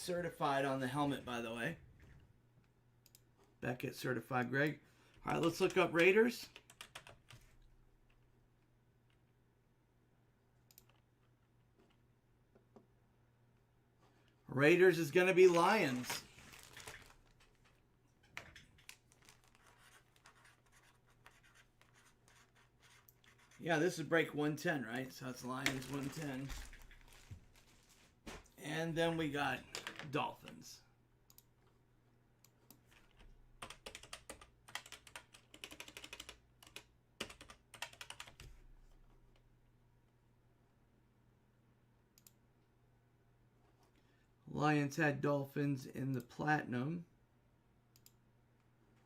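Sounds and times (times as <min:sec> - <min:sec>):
typing on keyboard: 0:06.5 - 0:07.4, 0:33.6 - 0:38.5.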